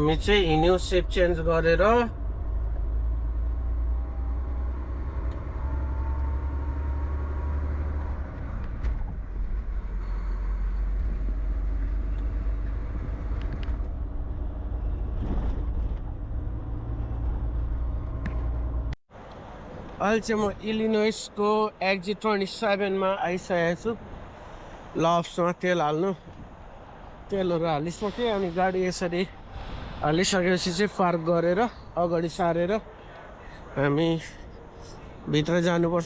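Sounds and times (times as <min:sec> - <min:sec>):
truck diesel engine drone: 0:00.0 - 0:19.0.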